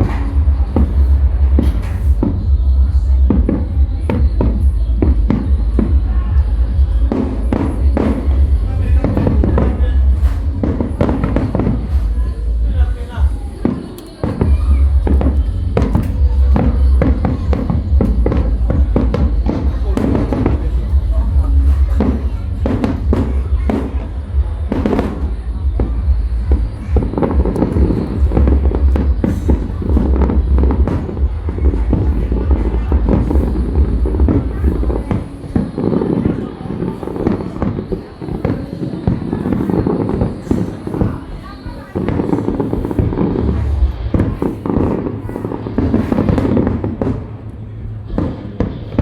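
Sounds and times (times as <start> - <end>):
continuous low rumble: 0.0 - 49.0
festival music with steady bass: 0.0 - 49.0
fireworks bursting with sharp bangs: 0.0 - 49.0.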